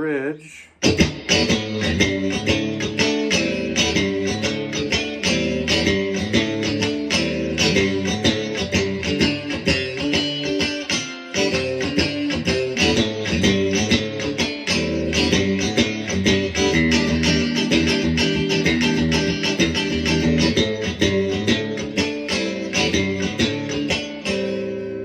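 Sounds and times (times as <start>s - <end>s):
electric guitar chords: 0.8s - 25.0s.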